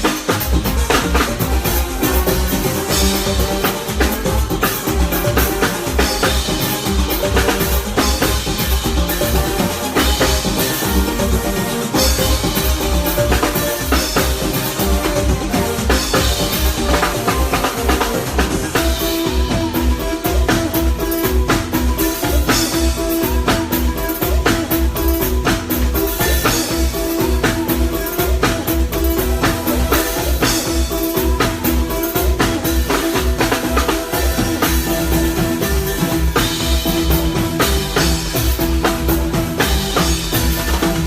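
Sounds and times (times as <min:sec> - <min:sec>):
drum kit beat: 0:00.0 - 0:41.0
held chords: 0:00.0 - 0:41.0.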